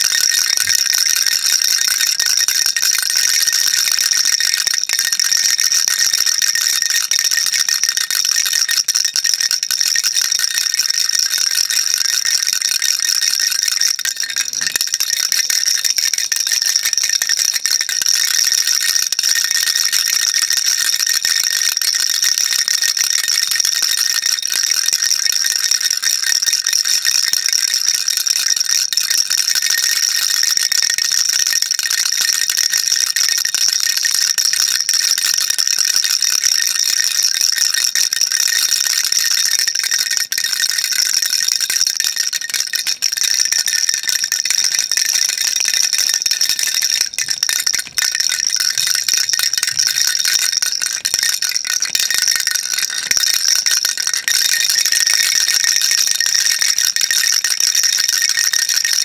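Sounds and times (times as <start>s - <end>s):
baby rattle shaken rapidly: 0.0s - 26.9s, 38.4s - 55.6s.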